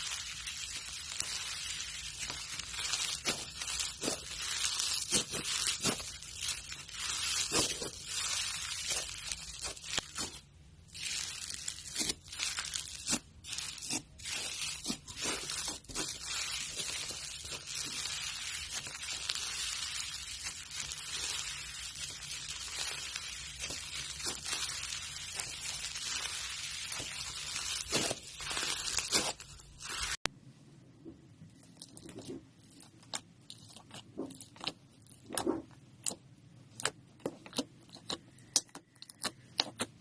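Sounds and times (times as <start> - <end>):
slime crackling: 0.0 - 30.2.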